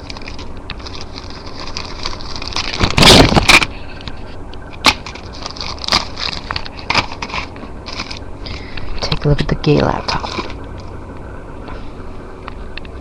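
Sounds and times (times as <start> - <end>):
packaging rustling and crinkling: 0.0 - 8.6, 10.1 - 11.0.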